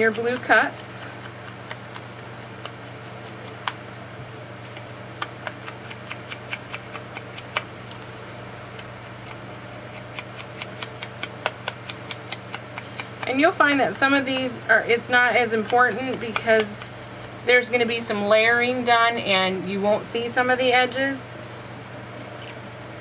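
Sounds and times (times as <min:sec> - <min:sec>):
paper rustling: 0:04.6 - 0:13.3
ink pad tapping on cardstock: 0:10.6 - 0:13.4.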